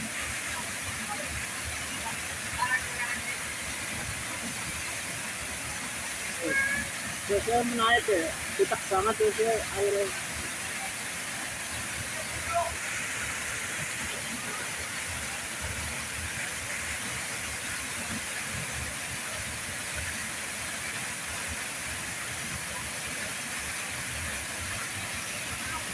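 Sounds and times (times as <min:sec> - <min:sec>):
waterfall rushing: 0:00.0 - 0:25.9.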